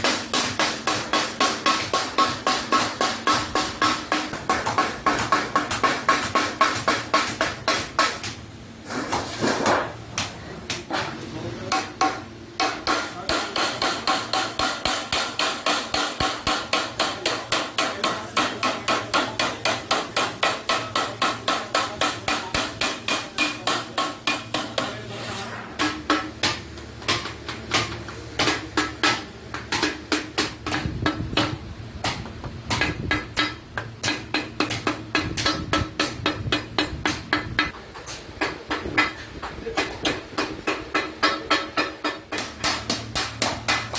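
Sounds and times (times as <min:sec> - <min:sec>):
hammer beating iron sheet: 0:00.0 - 0:09.9, 0:11.7 - 0:43.9.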